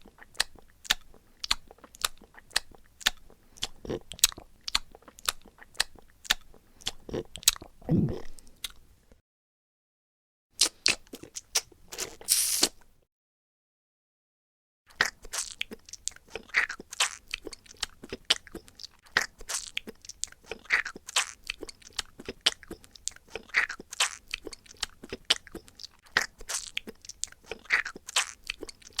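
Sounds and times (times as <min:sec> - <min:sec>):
wet mouth clicks and smacks: 0:10.6 - 0:12.8, 0:15.0 - 0:29.0.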